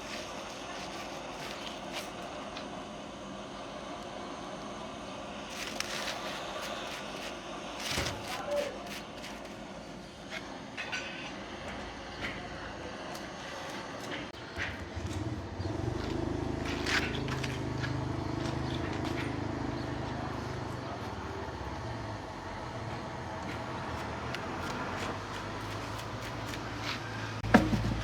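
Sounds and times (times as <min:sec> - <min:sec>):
engine running: 0:11.4 - 0:28.0.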